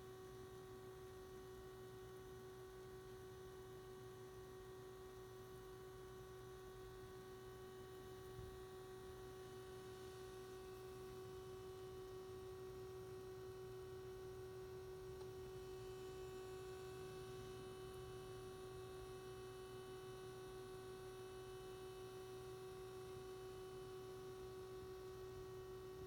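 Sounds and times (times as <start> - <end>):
scanner radio electrical hum: 0.0 - 26.0.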